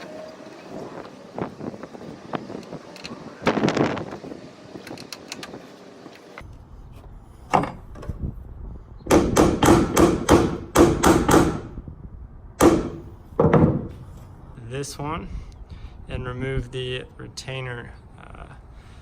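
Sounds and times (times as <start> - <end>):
hammer striking metal: 9.1 - 11.7, 12.6 - 13.8.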